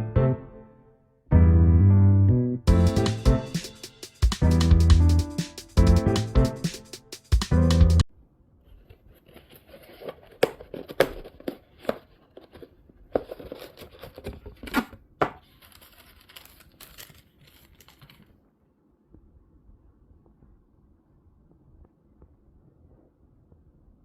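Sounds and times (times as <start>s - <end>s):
packaging crinkling and tearing: 9.3s - 18.3s.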